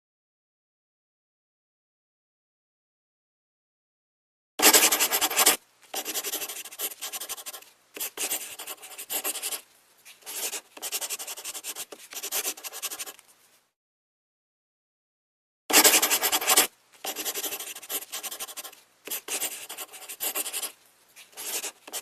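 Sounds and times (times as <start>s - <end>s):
scratchy rubbing noise: 4.6s - 13.3s, 15.7s - 22.0s.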